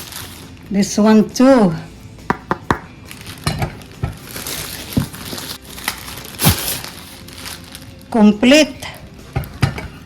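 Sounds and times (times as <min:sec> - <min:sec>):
packaging crinkling: 0:03.1 - 0:08.2.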